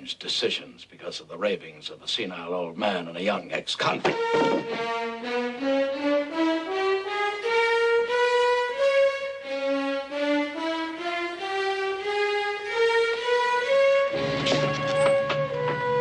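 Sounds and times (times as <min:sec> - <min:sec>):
violin playing slow melody: 0:04.1 - 0:16.0.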